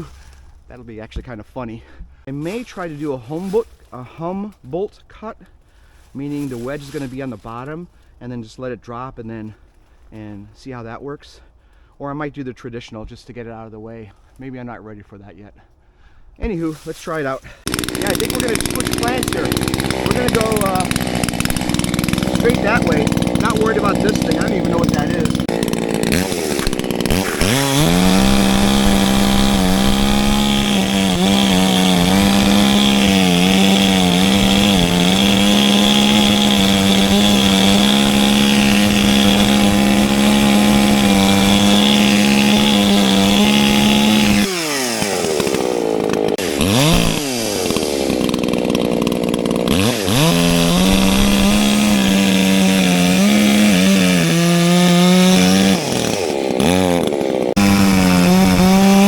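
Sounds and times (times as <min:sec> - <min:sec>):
chainsaw cutting a tree: 0:00.0 - 0:00.7, 0:05.4 - 0:08.1, 0:17.1 - 0:59.0.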